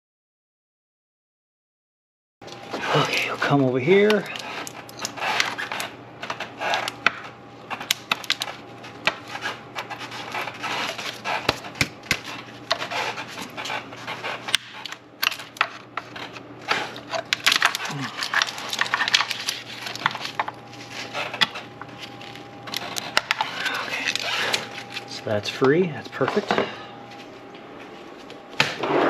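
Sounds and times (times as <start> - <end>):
faint steady hum: 2.4 - 29.0.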